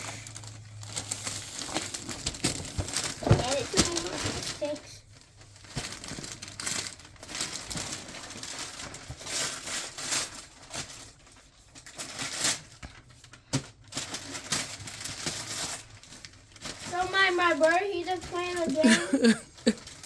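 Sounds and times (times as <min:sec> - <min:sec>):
wrapping paper tearing and crumpling: 0:00.0 - 0:20.0.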